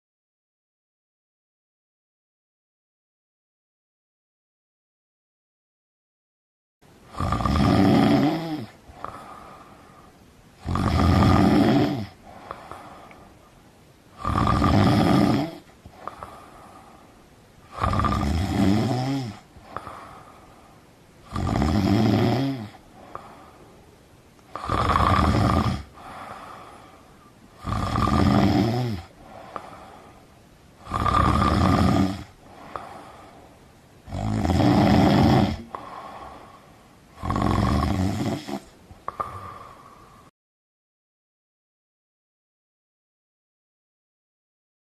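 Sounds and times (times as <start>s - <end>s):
person snoring: 7.1s - 13.3s, 14.1s - 23.8s, 24.5s - 30.2s, 30.8s - 33.4s, 34.0s - 40.3s
quiet breathing: 8.1s - 40.3s.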